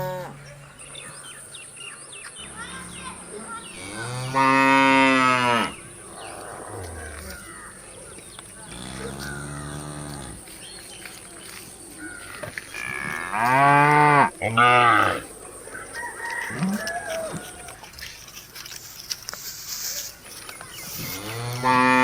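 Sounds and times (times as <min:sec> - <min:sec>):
cow mooing: 0:00.0 - 0:00.4, 0:02.5 - 0:07.4, 0:08.7 - 0:10.4, 0:12.8 - 0:15.3, 0:21.1 - 0:22.0.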